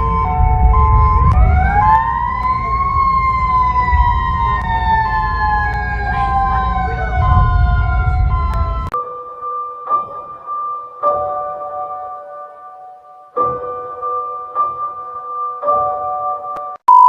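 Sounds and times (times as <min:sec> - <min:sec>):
heavy low rumble: 0:00.0 - 0:09.0
siren wailing: 0:00.0 - 0:09.0.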